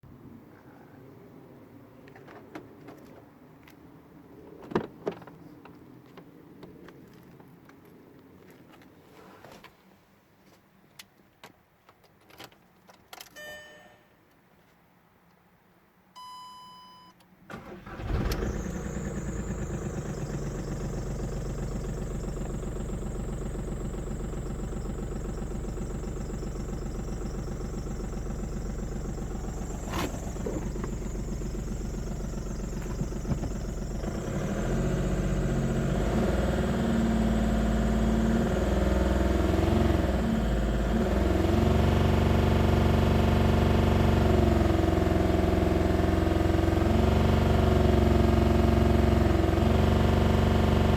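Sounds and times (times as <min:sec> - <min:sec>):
short beep: 0:13.4 - 0:14.2, 0:16.2 - 0:17.2
diesel engine starting and idling: 0:17.5 - 0:50.9.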